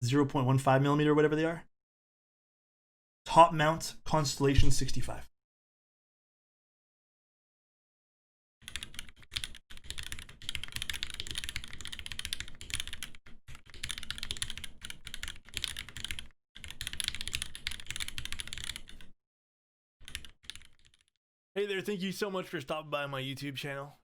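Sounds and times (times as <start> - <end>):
mechanical keyboard typing clacks: 8.7 - 19.1, 20.0 - 21.1.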